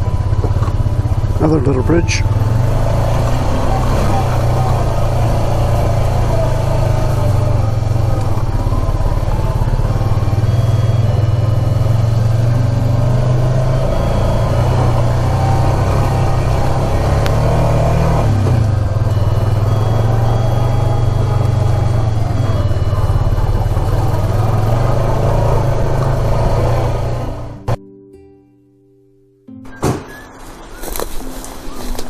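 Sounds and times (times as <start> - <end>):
atv engine running: 0.0 - 27.8.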